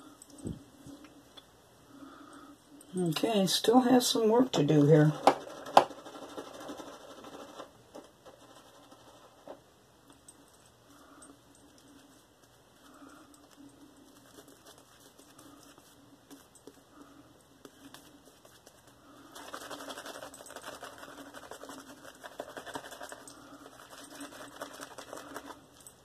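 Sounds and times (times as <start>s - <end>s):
shaving brush swishing lather: 17.8s - 25.6s.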